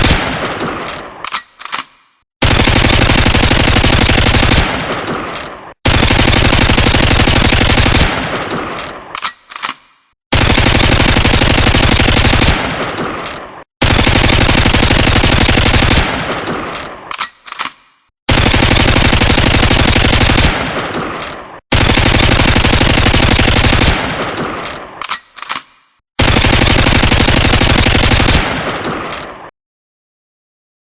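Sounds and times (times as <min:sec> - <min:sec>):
gunfire echo: 0:00.0 - 0:01.3, 0:02.4 - 0:09.2, 0:10.3 - 0:17.1, 0:18.3 - 0:25.0, 0:26.2 - 0:29.5
submachine gun automatic fire: 0:02.4 - 0:08.9, 0:10.3 - 0:16.7, 0:18.3 - 0:24.8, 0:26.2 - 0:29.5.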